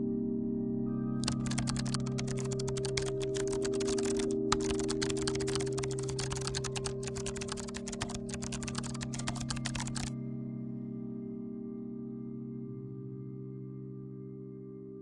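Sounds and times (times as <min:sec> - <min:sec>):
background music of held tones: 0:00.4 - 0:14.9
keyboard typing: 0:01.2 - 0:10.1.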